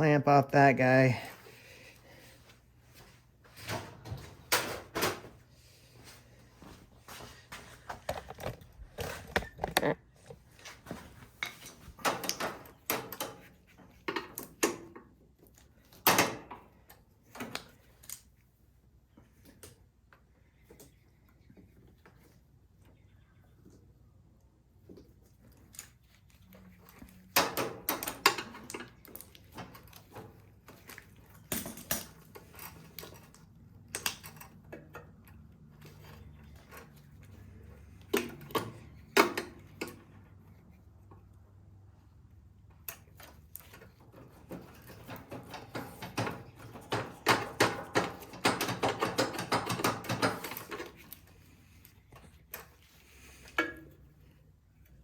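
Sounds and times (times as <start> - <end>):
hand tools clicking on metal: 42.9 - 51.3.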